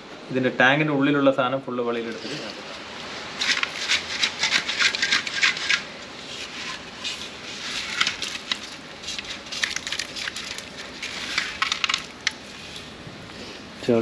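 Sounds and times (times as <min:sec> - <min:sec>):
salt scale crunching and rattling: 0:03.4 - 0:13.0.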